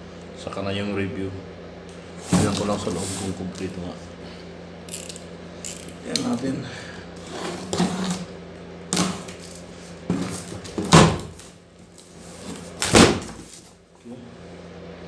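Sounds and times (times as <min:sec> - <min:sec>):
steady low hum: 0:00.0 - 0:15.0
cardboard box being opened: 0:02.2 - 0:03.8, 0:09.0 - 0:11.5.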